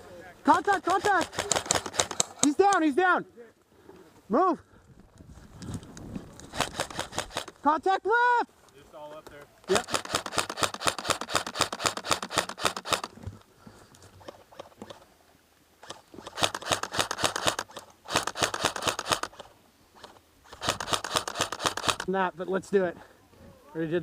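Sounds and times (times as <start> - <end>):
airsoft rifle firing bursts: 0.6 - 2.5, 6.5 - 7.6, 9.7 - 13.1, 15.8 - 22.1.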